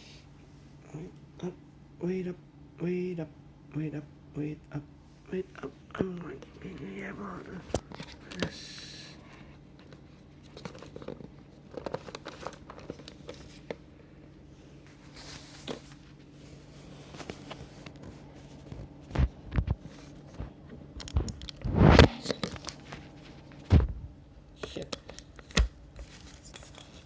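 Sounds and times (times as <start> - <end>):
packaging crinkling: 9.9 - 13.8.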